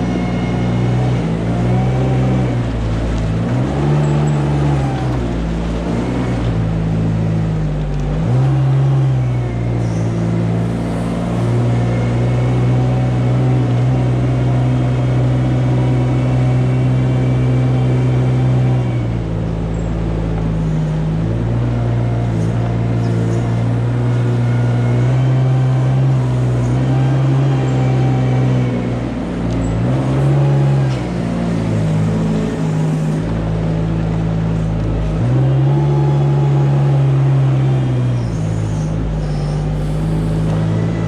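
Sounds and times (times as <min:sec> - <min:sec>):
machine engine running: 0:22.1 - 0:41.0.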